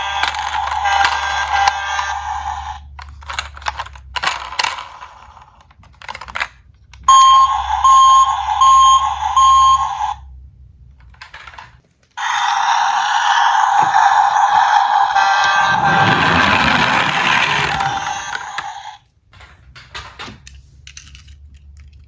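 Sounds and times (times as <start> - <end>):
continuous electronic toy sound: 0.0 - 2.9, 12.2 - 15.6
toys clicking and rattling: 0.0 - 7.0, 11.0 - 18.8.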